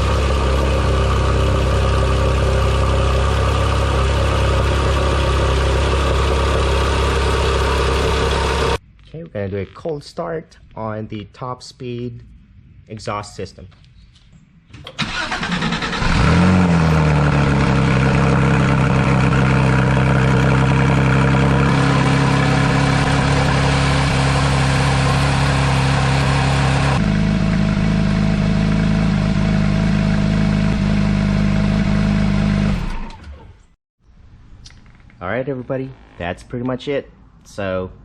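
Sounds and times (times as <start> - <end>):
car engine idling: 0.0 - 8.8, 15.0 - 32.7
engine rev flare: 0.0 - 8.8, 15.0 - 33.5
car engine cranking: 14.8 - 27.0.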